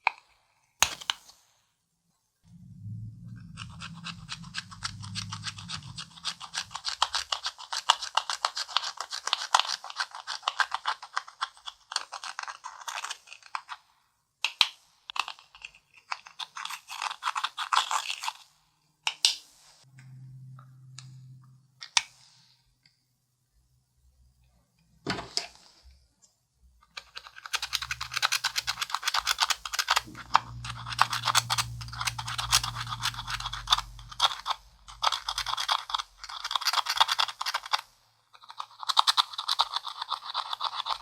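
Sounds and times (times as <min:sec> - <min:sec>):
faint low hum: 0:02.0 - 0:08.4, 0:19.8 - 0:38.3.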